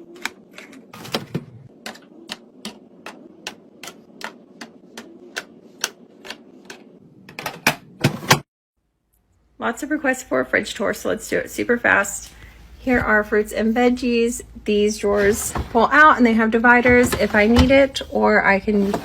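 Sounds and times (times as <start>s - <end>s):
items clicking and tapping: 0.0s - 8.2s.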